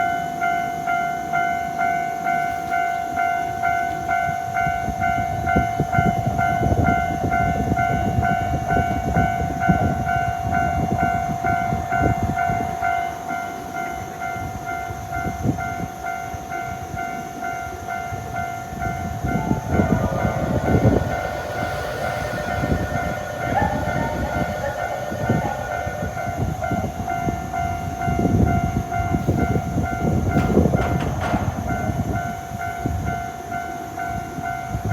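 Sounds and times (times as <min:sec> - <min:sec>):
level-crossing warning bell ringing: 0:00.0 - 0:34.9
warning tones: 0:18.2 - 0:32.2
train wheels clacking over rail joints: 0:30.2 - 0:32.1.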